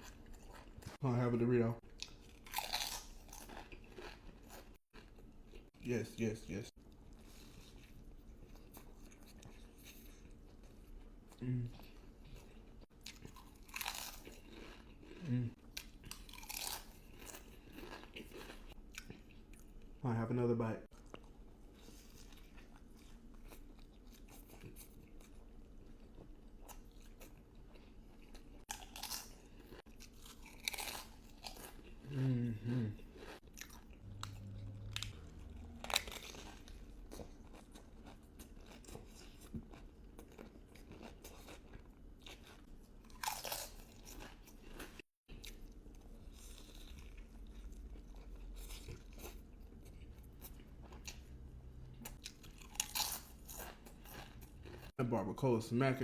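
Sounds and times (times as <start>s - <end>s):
person chewing crunchy food: 0.0s - 1.0s, 1.8s - 5.8s, 6.9s - 20.0s, 20.9s - 55.0s
person humming: 32.1s - 33.0s.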